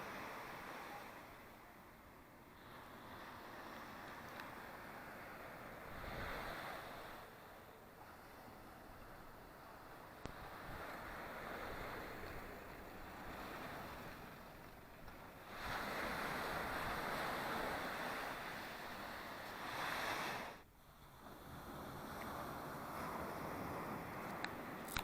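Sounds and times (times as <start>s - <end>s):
surf washing onto shore: 2.6s - 20.6s.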